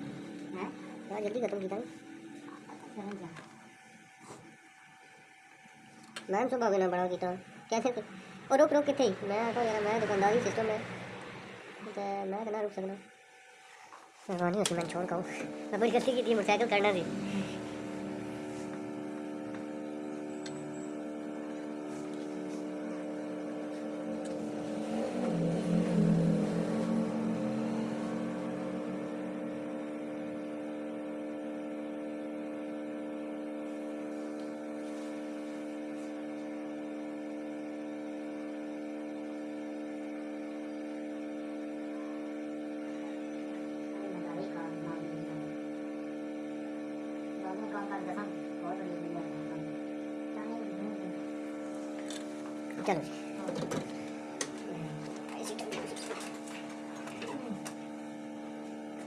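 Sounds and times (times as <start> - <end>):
electrical hum: 0.0 - 59.0
muffled rising noise: 6.9 - 12.8, 14.8 - 30.4.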